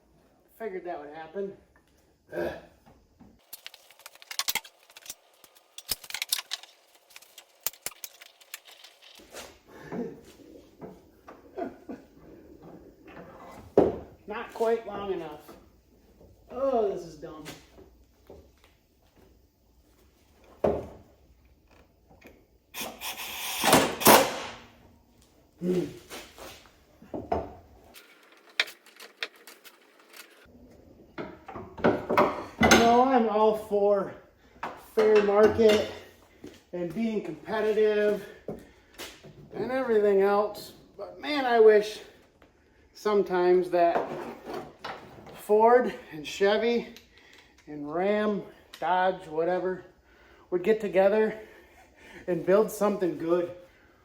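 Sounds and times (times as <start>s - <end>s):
metal tools clanking and rattling: 31.2s - 33.1s.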